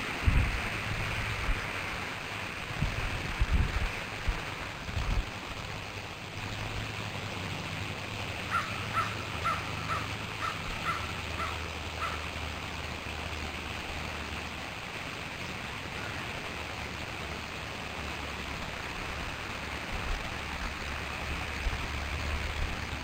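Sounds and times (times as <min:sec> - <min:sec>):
outdoor hiss: 0:00.0 - 0:23.0
bird calling: 0:08.5 - 0:12.4.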